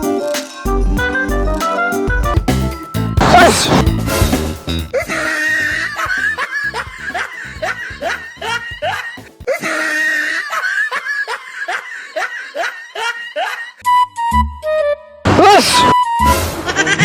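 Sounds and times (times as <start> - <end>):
background music: 0.0 - 9.6, 13.8 - 17.0
person laughing loudly: 3.2 - 3.8, 4.9 - 13.8, 16.7 - 17.0.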